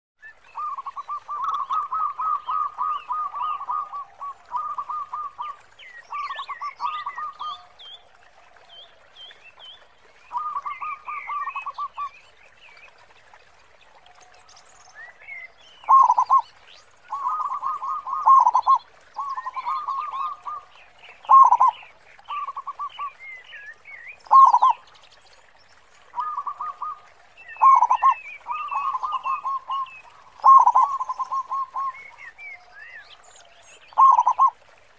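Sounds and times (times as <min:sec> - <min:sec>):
dove cooing: 0:00.8 - 0:05.5, 0:15.9 - 0:16.4, 0:17.2 - 0:20.6, 0:21.3 - 0:22.8, 0:27.6 - 0:29.8, 0:30.4 - 0:31.9, 0:34.0 - 0:34.5.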